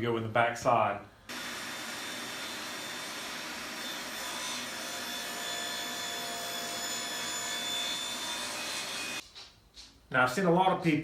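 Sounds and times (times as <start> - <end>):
power tool motor whining: 1.3 - 9.2.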